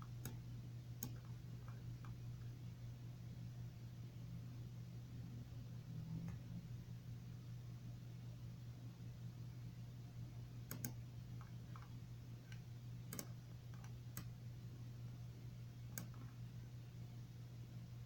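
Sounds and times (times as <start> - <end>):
low hum: 0.0 - 18.0
sharp clicks: 10.7 - 11.0, 16.0 - 16.3.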